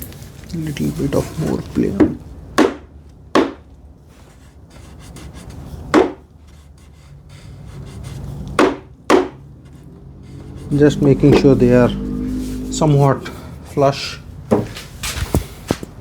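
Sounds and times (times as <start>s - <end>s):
sharp knocks on wood: 2.6s - 3.6s, 5.9s - 6.2s, 8.6s - 9.4s.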